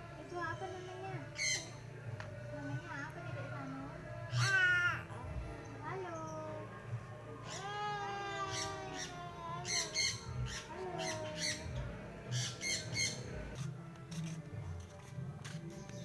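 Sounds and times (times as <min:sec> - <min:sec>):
birds wavering calls: 0:00.4 - 0:02.0, 0:04.3 - 0:06.6, 0:07.4 - 0:14.3
birds harsh squawks: 0:01.3 - 0:01.8, 0:07.4 - 0:13.7.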